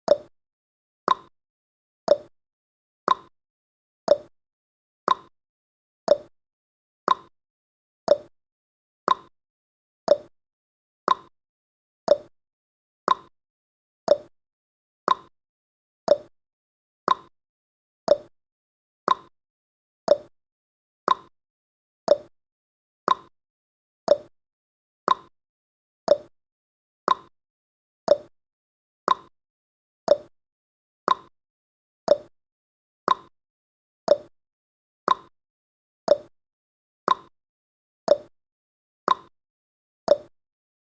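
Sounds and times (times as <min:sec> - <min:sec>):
timer ticks: 0:00.1 - 0:00.3, 0:01.1 - 0:01.3, 0:02.1 - 0:02.3, 0:03.1 - 0:03.3, 0:04.1 - 0:04.3, 0:05.1 - 0:05.3, 0:06.1 - 0:06.3, 0:07.1 - 0:07.3, 0:08.1 - 0:08.3, 0:09.1 - 0:09.3, 0:10.1 - 0:10.3, 0:11.1 - 0:11.3, 0:12.1 - 0:12.3, 0:13.1 - 0:13.3, 0:14.1 - 0:14.3, 0:15.1 - 0:15.3, 0:16.1 - 0:16.3, 0:17.1 - 0:17.3, 0:18.1 - 0:18.3, 0:19.1 - 0:19.3, 0:20.1 - 0:20.3, 0:21.1 - 0:21.3, 0:22.1 - 0:22.3, 0:23.1 - 0:23.3, 0:24.1 - 0:24.3, 0:25.1 - 0:25.3, 0:26.1 - 0:26.3, 0:27.1 - 0:27.3, 0:28.1 - 0:28.3, 0:29.1 - 0:29.3, 0:30.1 - 0:30.3, 0:31.1 - 0:31.3, 0:32.1 - 0:32.3, 0:33.1 - 0:33.3, 0:34.1 - 0:34.3, 0:35.1 - 0:35.3, 0:36.1 - 0:36.3, 0:37.1 - 0:37.3, 0:38.1 - 0:38.3, 0:39.1 - 0:39.3, 0:40.1 - 0:40.3.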